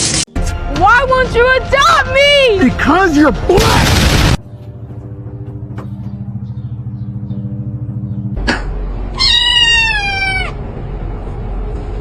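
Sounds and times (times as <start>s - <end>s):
cat meowing: 9.1s - 10.6s.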